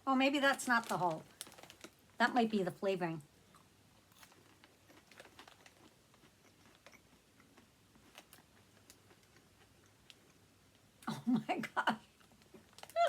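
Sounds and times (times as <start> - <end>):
popcorn being chewed: 0.3 - 2.4, 3.2 - 11.2, 11.8 - 13.0.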